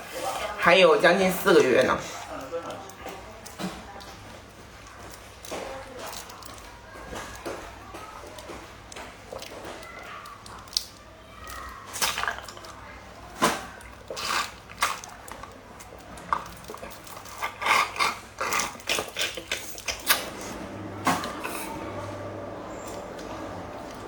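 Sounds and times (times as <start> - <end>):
utensils clinking: 1.2 - 24.0
wet eating smacks and clicks: 1.6 - 12.8, 13.4 - 20.3.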